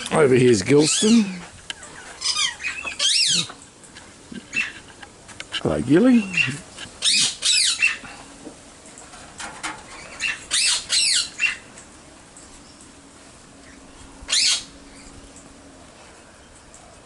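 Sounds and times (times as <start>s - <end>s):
cockatoo squawking: 0.8s - 3.6s, 4.4s - 4.9s, 6.1s - 8.2s, 10.0s - 11.7s, 13.7s - 15.1s.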